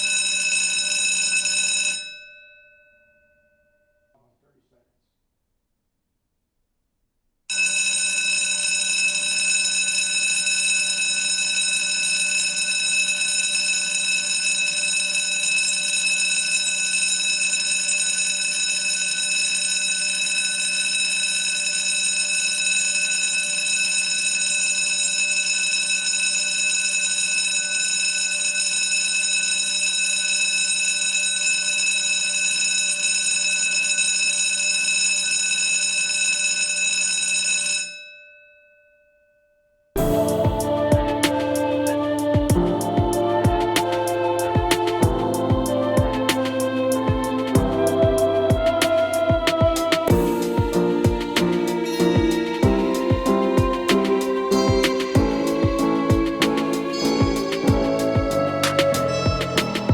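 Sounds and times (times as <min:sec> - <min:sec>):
school bell ringing: 0:00.0 - 0:04.0, 0:07.5 - 0:38.3, 0:49.1 - 0:59.9.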